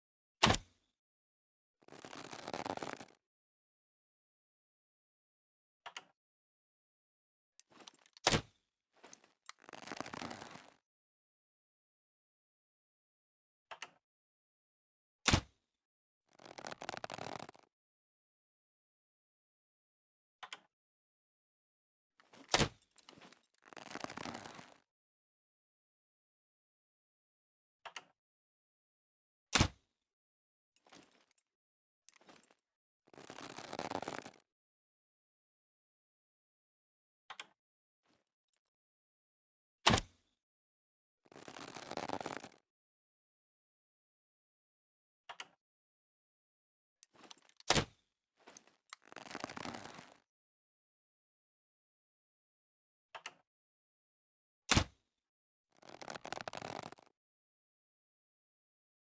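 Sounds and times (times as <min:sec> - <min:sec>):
crossbow string snap and thud: 0:00.4 - 0:00.8, 0:08.2 - 0:08.5, 0:15.3 - 0:15.6, 0:39.9 - 0:40.2, 0:54.7 - 0:55.0.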